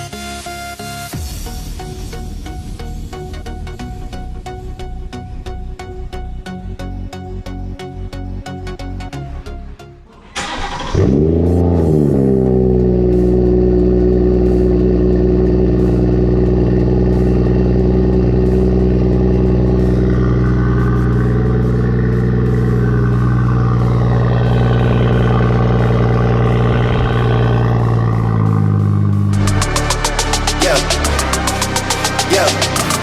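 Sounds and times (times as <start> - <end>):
car engine starting and idling: 8.8 - 33.0.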